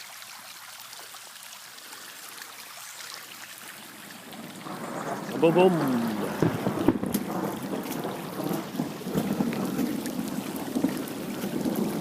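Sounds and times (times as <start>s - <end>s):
raindrops ticking on microphone: 0.0s - 12.0s
heavy rain falling: 3.3s - 12.0s
low rumble of thunder: 4.1s - 12.0s.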